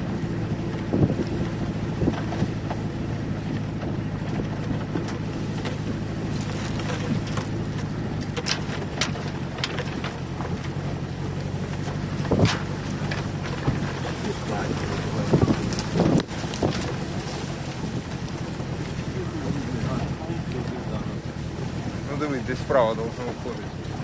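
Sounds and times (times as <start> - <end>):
knocks and rattles: 0.0 - 22.4
car engine running: 0.0 - 24.0.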